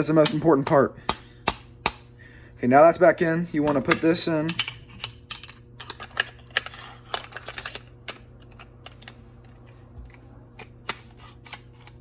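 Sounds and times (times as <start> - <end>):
gun metal parts clicking: 3.8 - 9.6.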